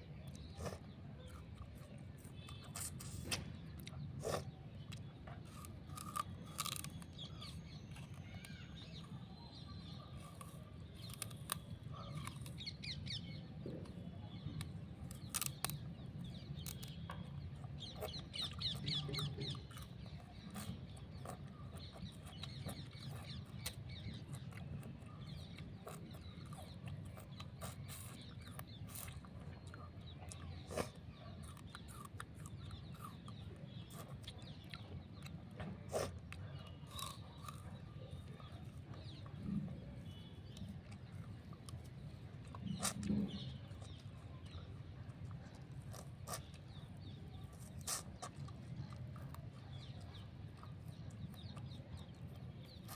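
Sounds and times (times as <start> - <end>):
sugarcane crunching: 1.4 - 13.4, 14.3 - 37.8.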